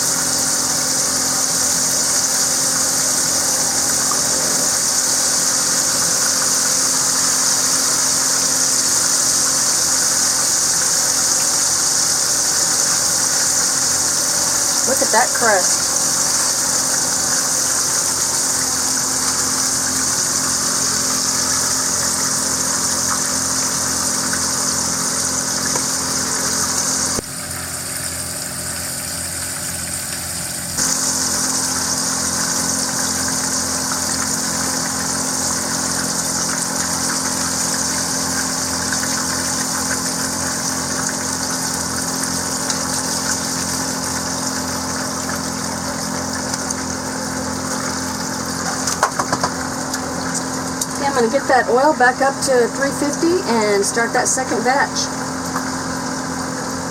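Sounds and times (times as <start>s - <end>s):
chicken deep-frying in oil: 0.0s - 56.9s
low steady hum: 49.8s - 55.7s.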